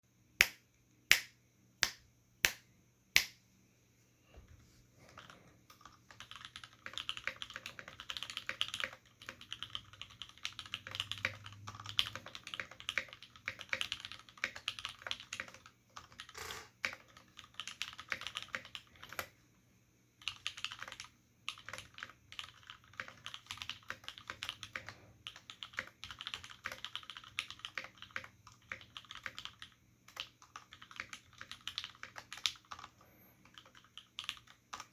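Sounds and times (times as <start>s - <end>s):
mechanical keyboard typing: 5.1s - 19.4s, 20.2s - 34.9s.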